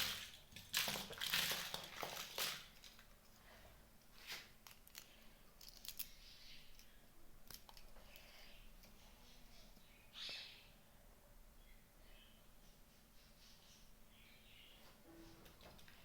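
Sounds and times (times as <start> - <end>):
plastic packaging crinkling: 0.0 - 3.1.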